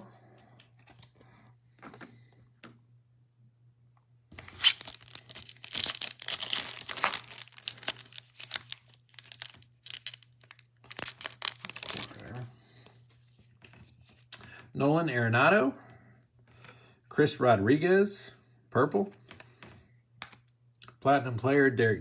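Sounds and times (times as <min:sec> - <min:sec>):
wrapper tearing and crinkling: 0:04.4 - 0:12.4.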